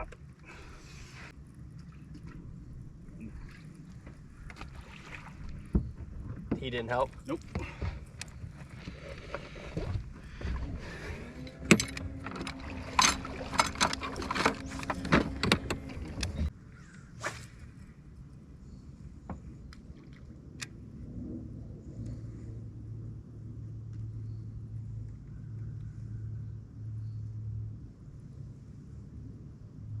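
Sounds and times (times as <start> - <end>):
fishing gear knocking and rattling: 11.4 - 16.5.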